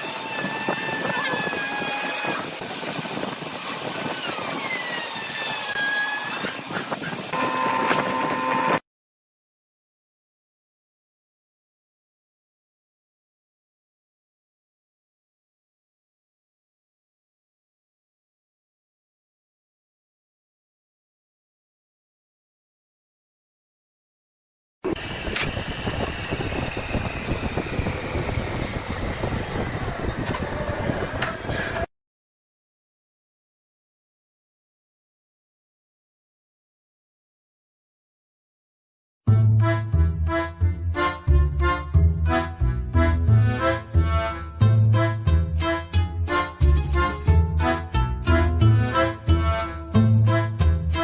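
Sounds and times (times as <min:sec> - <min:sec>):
wood lathe running with whine: 0:07.2 - 0:08.8
motor whine: 0:07.3 - 0:08.8, 0:24.9 - 0:31.8
steady whine: 0:24.9 - 0:31.5.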